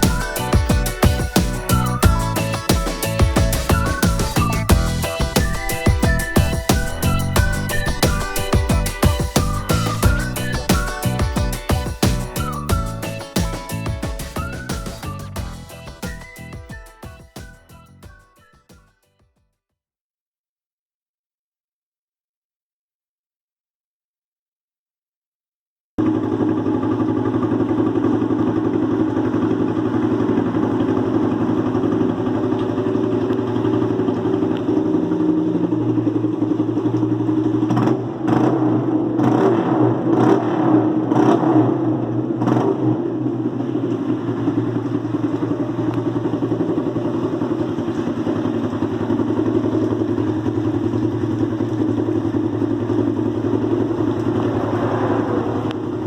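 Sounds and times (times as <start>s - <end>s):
engine running steadily: 0.0s - 13.0s, 41.0s - 56.0s.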